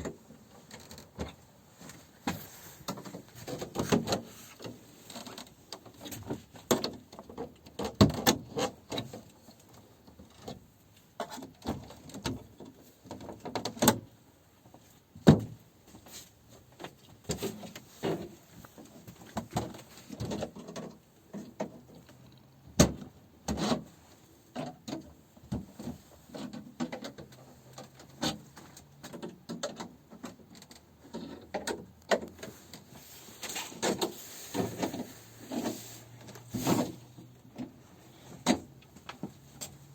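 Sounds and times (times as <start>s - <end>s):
objects being handled and set down: 0.0s - 7.0s, 31.2s - 39.8s.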